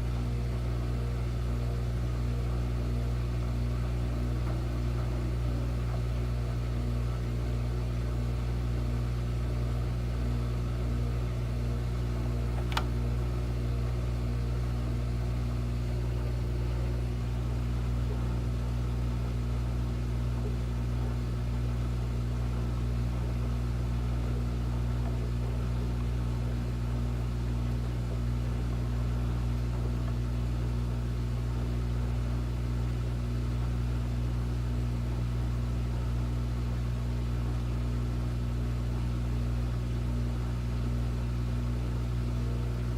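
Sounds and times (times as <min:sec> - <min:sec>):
washing machine electrical hum: 0:00.0 - 0:42.9
sharp click: 0:12.6 - 0:13.0.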